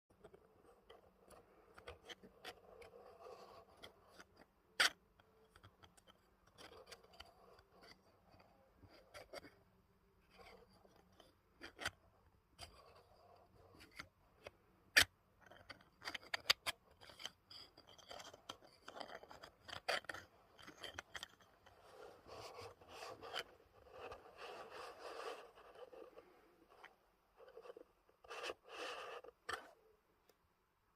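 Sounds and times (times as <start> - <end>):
plastic scraping and rubbing: 0.1 - 9.6, 10.2 - 29.9.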